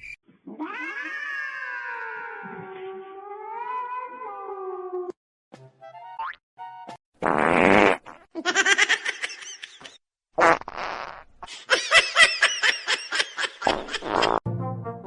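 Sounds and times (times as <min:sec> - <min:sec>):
fart sounds: 0:07.2 - 0:08.3, 0:10.4 - 0:11.4, 0:13.6 - 0:14.4
high-pitched laughter: 0:08.4 - 0:10.0, 0:11.5 - 0:14.3.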